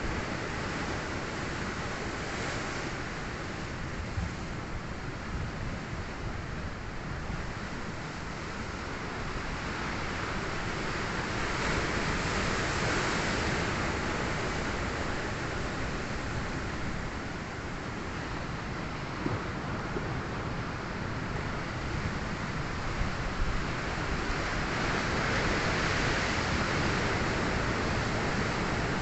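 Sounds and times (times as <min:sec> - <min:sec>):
wind rumble on microphone: 0:00.0 - 0:29.0.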